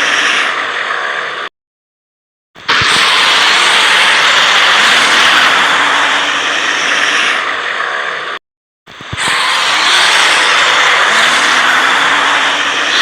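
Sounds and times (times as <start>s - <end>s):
monster roar: 2.7s - 8.4s, 9.2s - 13.0s.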